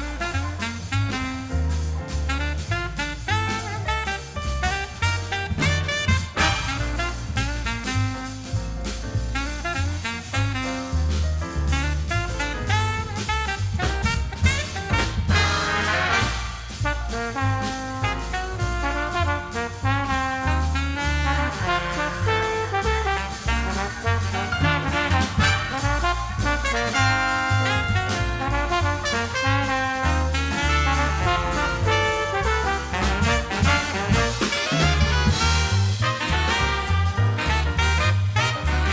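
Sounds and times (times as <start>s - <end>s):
upbeat swing jazz: 0.0s - 38.9s.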